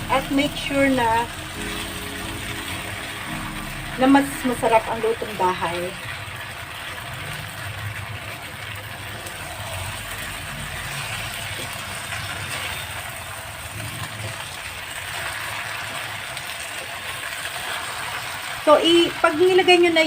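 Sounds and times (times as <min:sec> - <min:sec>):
low steady hum: 0:00.0 - 0:06.3
pan simmering hiss: 0:00.0 - 0:20.0.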